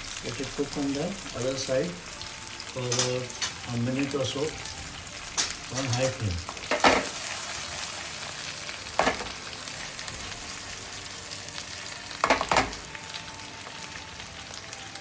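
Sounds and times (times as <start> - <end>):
chicken sizzling in a pan: 0.0 - 15.0.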